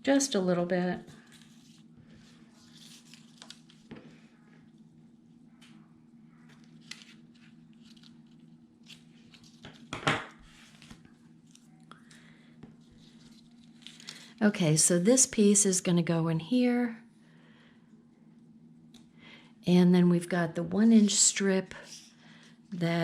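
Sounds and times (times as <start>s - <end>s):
steady low hum: 0.0s - 23.0s
paper rustling: 1.2s - 4.0s, 6.4s - 11.8s, 12.7s - 14.4s.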